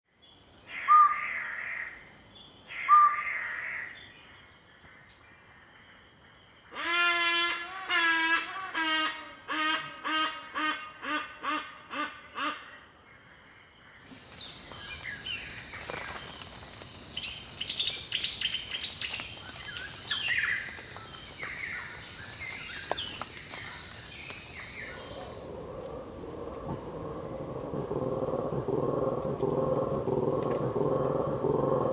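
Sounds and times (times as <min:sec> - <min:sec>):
high insect whine: 0:00.2 - 0:31.9
birds chirping and calling: 0:14.4 - 0:31.9
animal calling: 0:24.3 - 0:31.9
low rough sound: 0:24.8 - 0:31.9.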